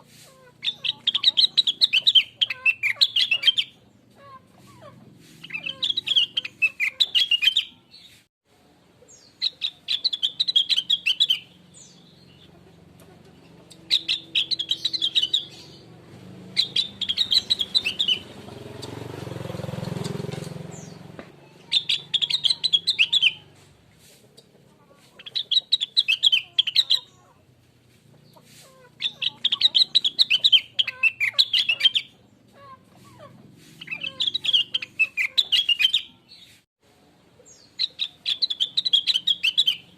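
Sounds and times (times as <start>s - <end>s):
bird chirping: 0.3s - 8.2s, 9.0s - 23.6s, 24.3s - 27.4s, 28.1s - 36.6s, 37.4s - 39.9s.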